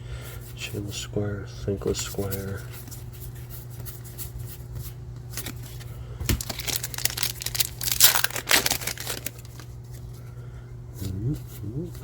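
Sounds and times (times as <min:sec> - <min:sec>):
foil wrapper crinkling: 0:05.4 - 0:10.1.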